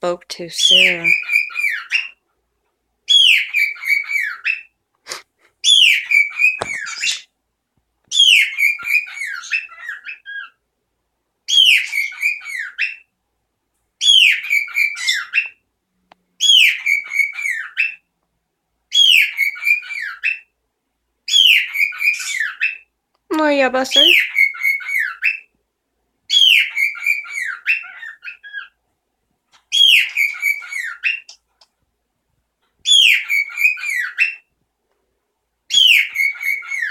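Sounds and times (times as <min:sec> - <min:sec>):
pet bird whistling song: 0:03.1 - 0:04.7, 0:05.6 - 0:07.3, 0:08.1 - 0:10.6, 0:11.5 - 0:13.0, 0:14.0 - 0:15.6, 0:16.4 - 0:18.0, 0:18.9 - 0:20.5, 0:21.3 - 0:22.8, 0:26.3 - 0:28.7, 0:29.7 - 0:31.4, 0:32.8 - 0:34.4, 0:35.7 - 0:36.9.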